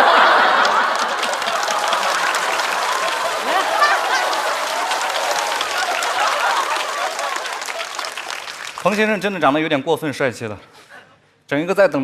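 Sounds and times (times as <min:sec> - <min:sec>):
audience applauding: 0:00.0 - 0:09.5.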